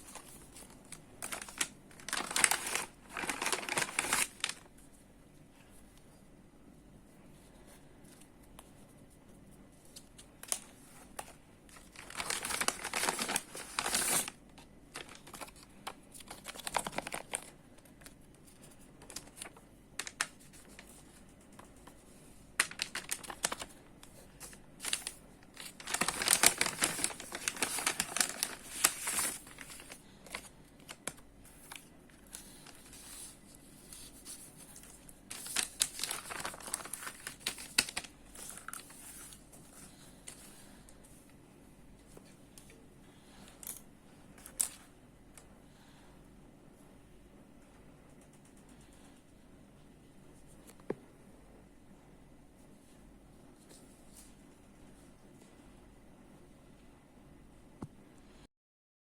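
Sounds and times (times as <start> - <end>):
plastic packaging crinkling: 0.0 - 4.7, 10.2 - 21.2, 22.6 - 40.6.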